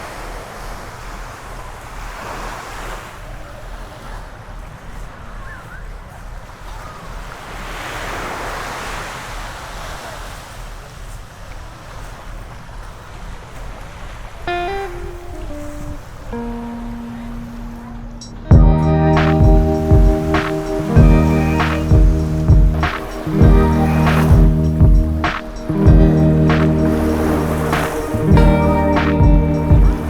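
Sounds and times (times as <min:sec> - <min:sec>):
small sea waves washing ashore: 0:00.0 - 0:18.2, 0:18.8 - 0:30.0
music: 0:18.2 - 0:30.0
wind rumble on microphone: 0:18.5 - 0:30.0.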